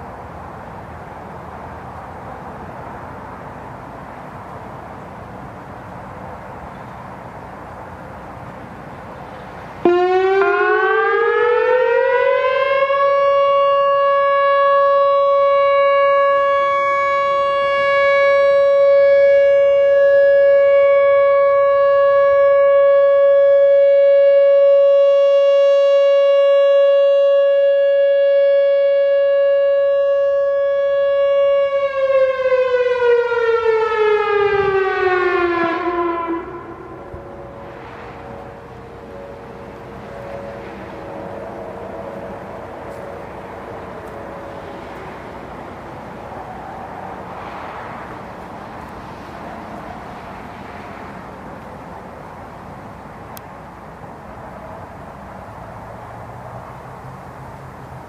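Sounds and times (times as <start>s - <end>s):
electronic warning siren: 9.8s - 47.4s.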